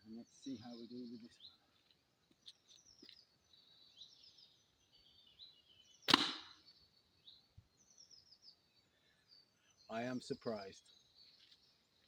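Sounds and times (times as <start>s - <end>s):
birds chirping faintly: 0.0s - 12.0s
arrow hitting helmet: 6.1s - 6.6s.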